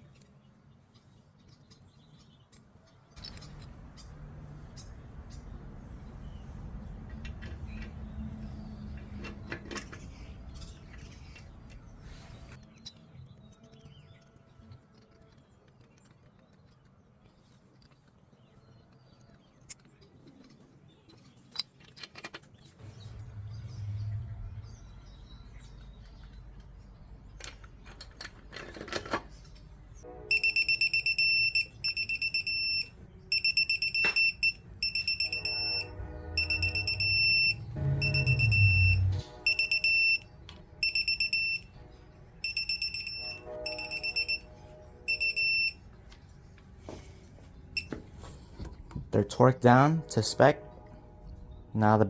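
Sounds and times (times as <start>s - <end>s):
high electronic beeping: 30.3s - 40.2s, 40.8s - 41.7s, 42.4s - 44.5s.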